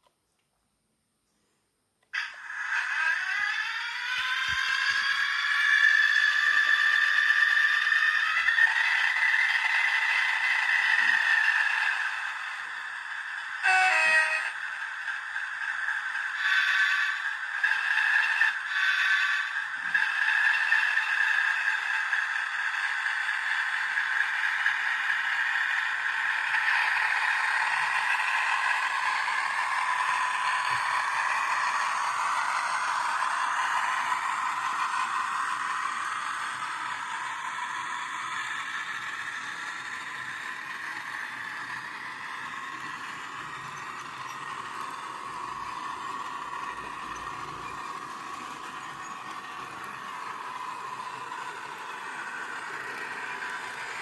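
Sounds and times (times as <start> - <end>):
model train wheels on track: 2.0 - 54.0
model diesel engine sound: 2.2 - 54.0.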